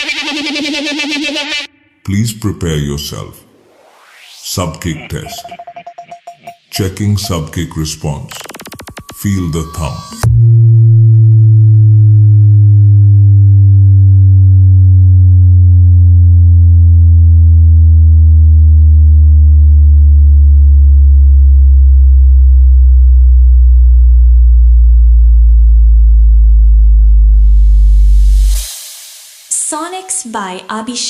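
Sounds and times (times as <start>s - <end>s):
deep bass tone gliding down: 0.0s - 5.8s, 9.4s - 28.7s.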